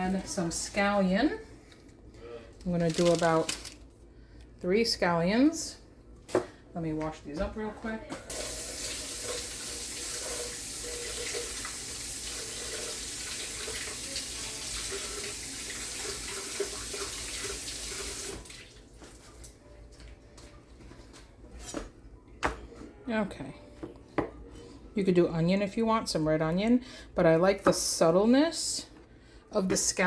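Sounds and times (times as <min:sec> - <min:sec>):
kitchen faucet running: 0:08.3 - 0:18.8.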